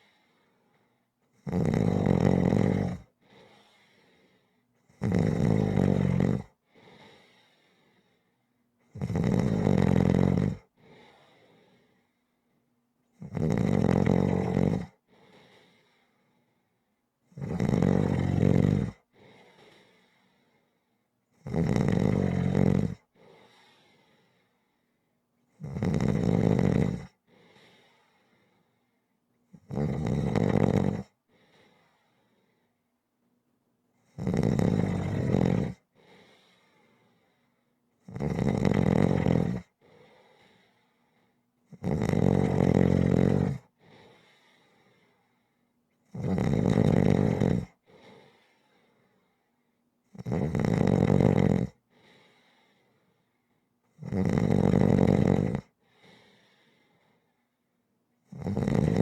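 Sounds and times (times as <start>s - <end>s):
faint breath: 0.0s - 1.2s, 3.1s - 4.8s, 6.6s - 8.6s, 10.7s - 12.7s, 15.0s - 17.0s, 19.0s - 21.1s, 23.0s - 25.2s, 27.2s - 29.2s, 31.2s - 32.9s, 35.8s - 37.8s, 39.7s - 41.5s, 43.6s - 45.8s, 47.8s - 49.8s, 51.8s - 53.7s, 55.7s - 57.6s
person snoring: 1.4s - 3.7s, 4.9s - 6.6s, 8.9s - 10.7s, 13.2s - 15.0s, 17.4s - 19.0s, 21.4s - 23.9s, 25.6s - 27.8s, 29.6s - 31.1s, 34.1s - 35.8s, 38.1s - 39.7s, 41.7s - 43.7s, 46.1s - 48.2s, 50.2s - 51.8s, 54.0s - 56.4s, 58.3s - 59.0s.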